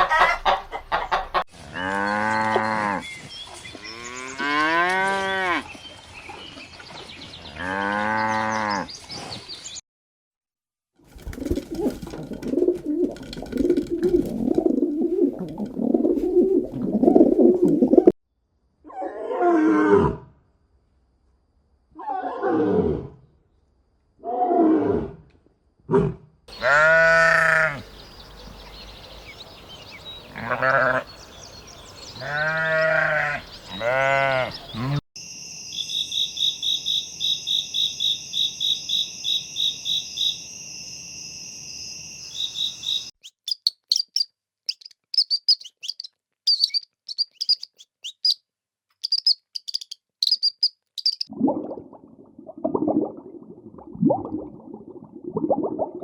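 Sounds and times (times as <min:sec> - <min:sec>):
quick high chirps: 0:42.3 - 0:48.4, 0:49.0 - 0:51.3.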